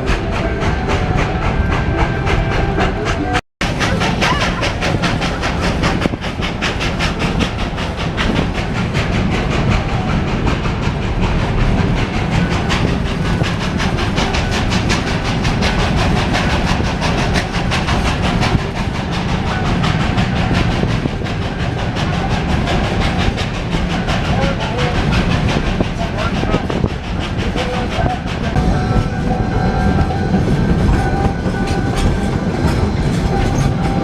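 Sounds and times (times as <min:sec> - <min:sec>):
moving train rumbling: 0:00.0 - 0:34.0.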